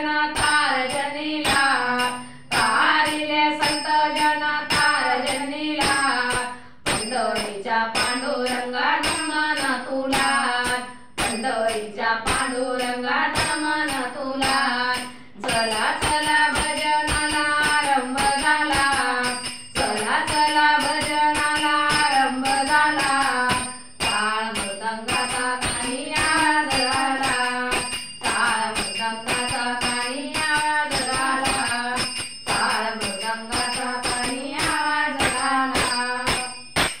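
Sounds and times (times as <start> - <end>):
hand cymbals jingling: 0.4 - 37.0.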